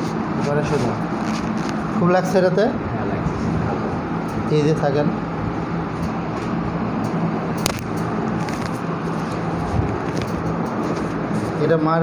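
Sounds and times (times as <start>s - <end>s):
background noise with low hum: 0.0s - 12.0s
sharp click: 7.0s - 8.8s.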